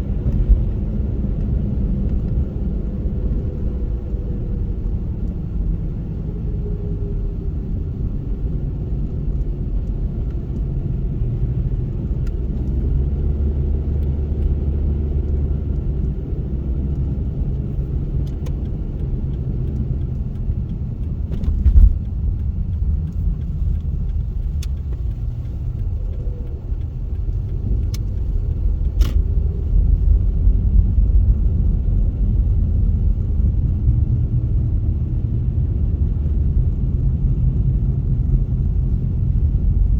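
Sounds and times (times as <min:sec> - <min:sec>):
car engine and tyres rumbling: 0:00.0 - 0:39.9
faint clicks: 0:15.2 - 0:30.2.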